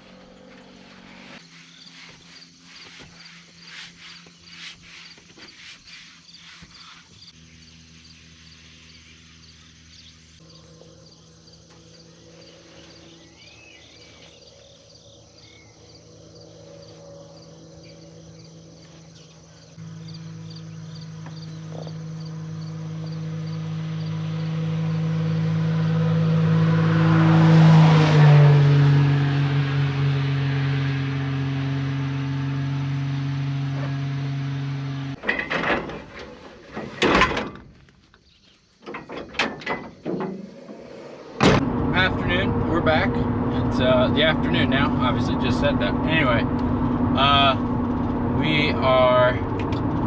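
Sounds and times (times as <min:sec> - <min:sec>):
engine drone: 0:00.0 - 0:36.0, 0:40.0 - 0:50.0
insects chirping: 0:01.4 - 0:25.1, 0:37.5 - 0:41.4.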